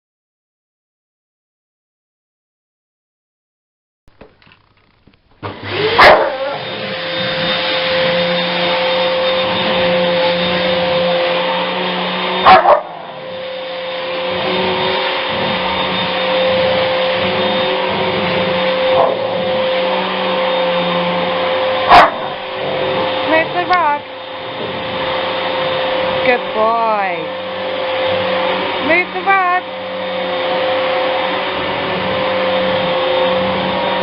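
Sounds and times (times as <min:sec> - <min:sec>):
vacuum cleaner whining: 0:04.1 - 0:34.0
dog barking sharply: 0:06.0 - 0:06.6, 0:12.4 - 0:13.0, 0:19.0 - 0:19.2, 0:21.9 - 0:22.3.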